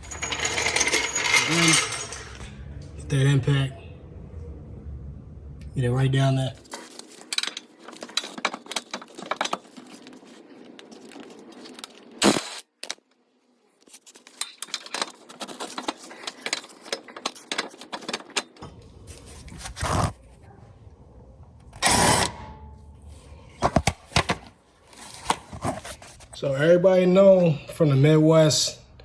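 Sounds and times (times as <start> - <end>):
metal tools clinking and scraping: 0.0 - 2.6, 6.6 - 12.1, 13.9 - 18.6.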